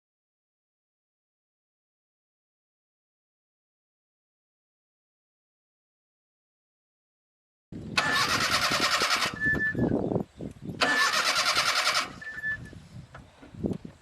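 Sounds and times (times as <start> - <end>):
car starter motor cranking: 8.0 - 9.7, 10.8 - 12.6.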